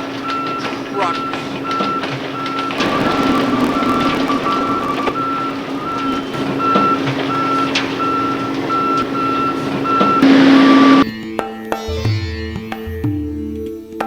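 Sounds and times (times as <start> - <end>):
rush of engine noise: 0.0 - 11.0
scattered knocks: 0.0 - 11.0
truck engine hum: 0.0 - 11.0
truck reversing alarms beeping: 0.0 - 11.1.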